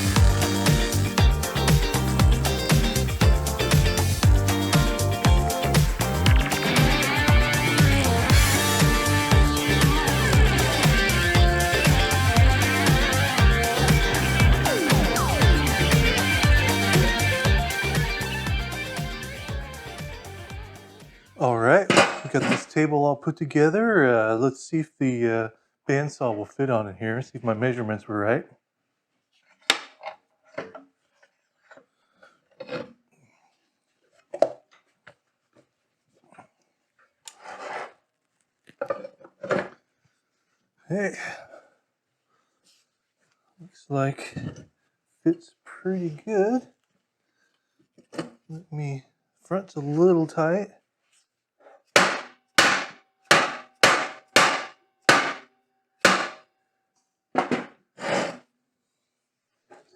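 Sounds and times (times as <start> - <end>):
saw scraping across table: 37.4 - 38.0, 58.0 - 58.5.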